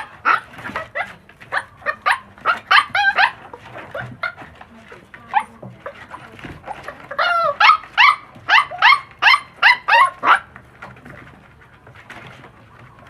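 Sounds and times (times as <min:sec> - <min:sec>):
puppy yapping: 0:00.0 - 0:04.4, 0:06.7 - 0:10.6.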